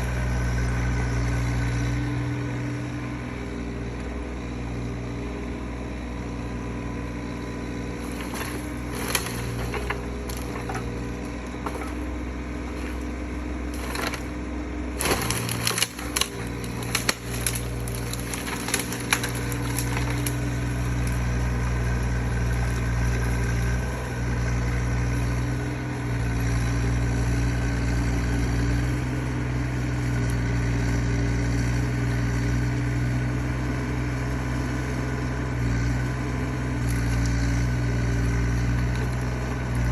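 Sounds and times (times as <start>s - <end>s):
mini excavator engine running: 0.0s - 39.9s
wood cracking and snapping: 7.6s - 13.1s, 13.7s - 21.7s.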